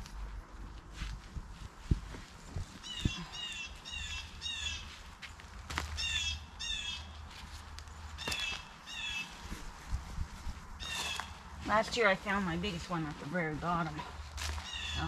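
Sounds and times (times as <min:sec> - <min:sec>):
bird calling: 0:02.8 - 0:05.0, 0:05.8 - 0:07.2, 0:08.2 - 0:09.5, 0:10.8 - 0:11.4, 0:14.5 - 0:15.0.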